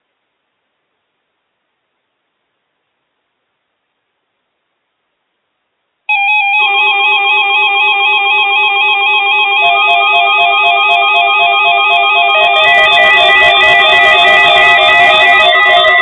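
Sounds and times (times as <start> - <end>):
warbling alarm beeps: 6.1 - 16.0.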